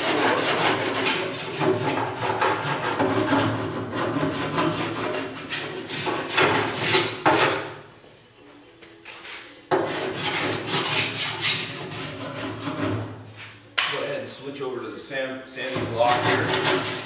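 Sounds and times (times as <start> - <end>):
rasp scraping body filler: 0.0 - 7.7, 9.1 - 13.6, 15.6 - 17.0.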